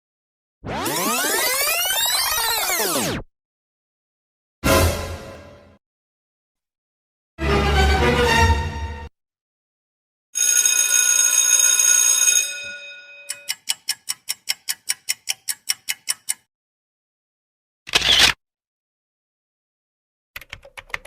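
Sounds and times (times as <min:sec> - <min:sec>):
evenly spaced sharp ticks: 0:13.3 - 0:16.5.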